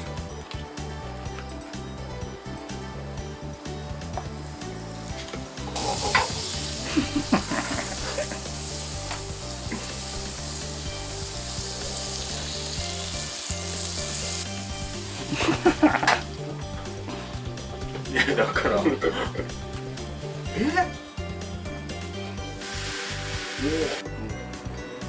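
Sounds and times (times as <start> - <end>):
food sizzling in a frying pan: 4.3 - 16.4, 22.6 - 24.0.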